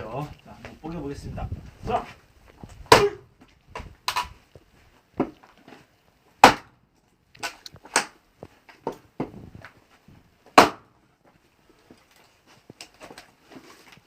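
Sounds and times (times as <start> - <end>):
axe chopping log: 2.9 - 3.2, 6.4 - 6.8, 7.4 - 8.2, 10.5 - 10.9.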